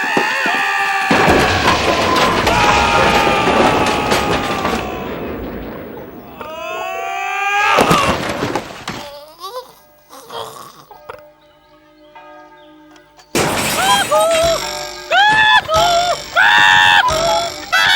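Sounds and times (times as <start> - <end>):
sliding pitched sounds: 1.1 - 6.8
crash: 1.1 - 9.0, 13.4 - 17.9
cartoon music with bending notes: 9.4 - 17.9.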